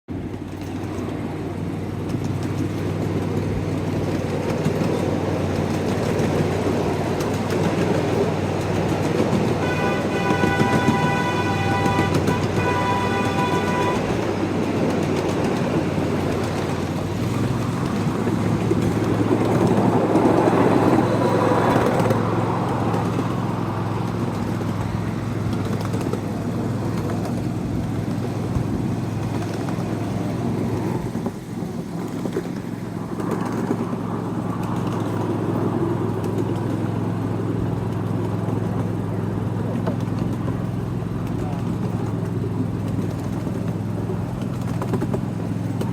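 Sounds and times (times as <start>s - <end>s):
locomotive engine humming: 0.1s - 45.9s
locomotive horn: 6.8s - 31.2s.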